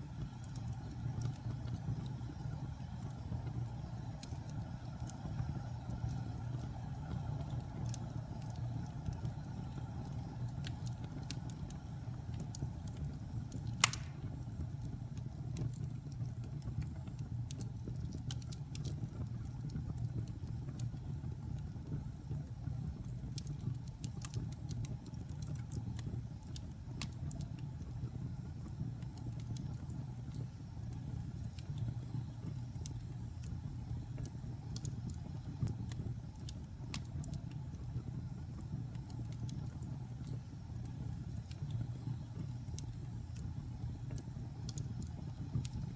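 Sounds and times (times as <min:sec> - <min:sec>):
wood fire crackling: 0:00.0 - 0:45.9
loud pop of fire: 0:13.7 - 0:14.4.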